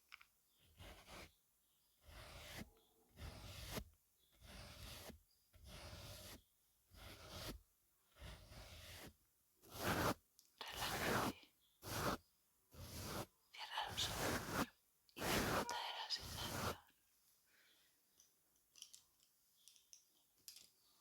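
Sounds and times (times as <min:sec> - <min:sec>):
makeup brush swishing: 0:09.7 - 0:10.2, 0:10.8 - 0:12.2, 0:12.8 - 0:13.2, 0:14.0 - 0:16.8.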